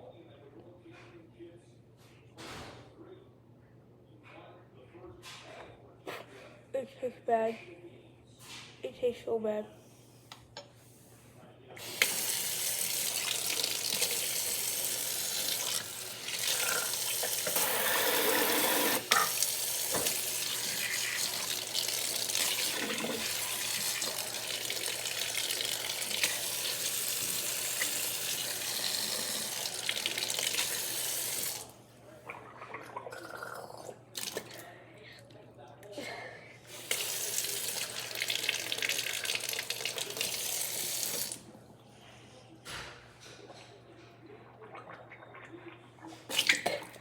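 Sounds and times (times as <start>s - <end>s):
tap water running and splashing: 11.8s - 31.7s, 36.7s - 41.4s.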